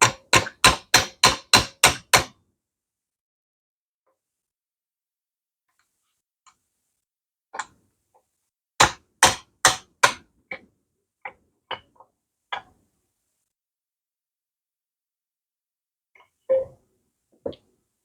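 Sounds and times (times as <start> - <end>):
hammer strikes: 0.0 - 2.3, 8.8 - 10.2.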